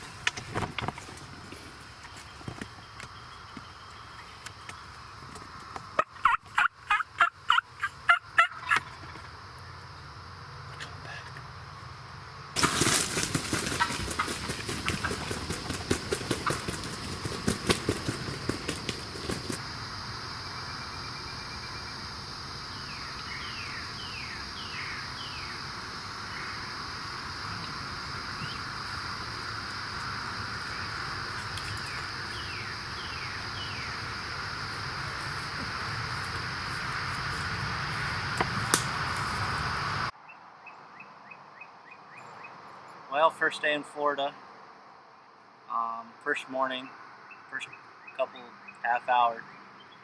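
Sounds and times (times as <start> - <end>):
high insect drone: 0.0 - 40.2
wild turkey yelping: 6.0 - 9.4, 12.6 - 19.6.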